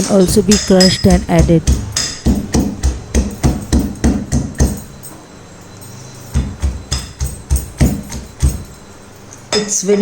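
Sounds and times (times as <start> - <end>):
pestle thudding in mortar: 0.0 - 5.0, 6.3 - 8.6.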